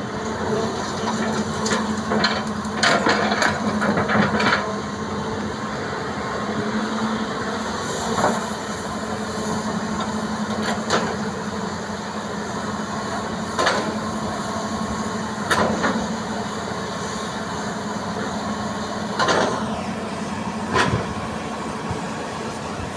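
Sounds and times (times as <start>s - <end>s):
excavator engine humming: 0.0s - 22.9s
excavator sharp clunks: 13.5s - 14.1s, 15.4s - 16.6s, 19.0s - 22.9s.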